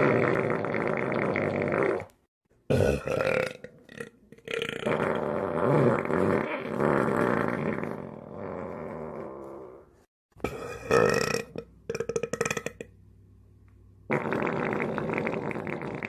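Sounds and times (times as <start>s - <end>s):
person burping: 2.7s - 8.8s, 10.4s - 12.9s.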